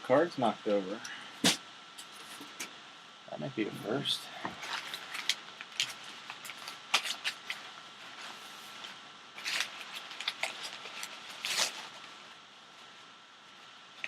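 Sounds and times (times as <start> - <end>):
packaging crinkling: 4.6 - 12.3.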